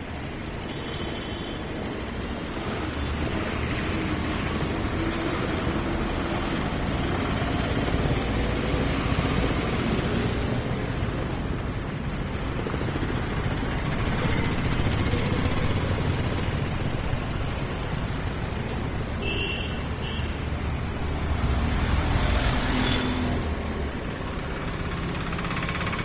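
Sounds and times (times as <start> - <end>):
vehicle engines: 0.0 - 26.0
cars passing: 1.6 - 26.0.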